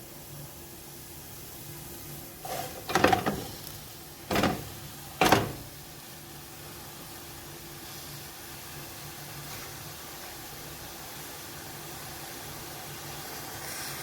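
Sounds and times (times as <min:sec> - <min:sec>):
chicken sizzling in a pot: 0:05.8 - 0:14.0.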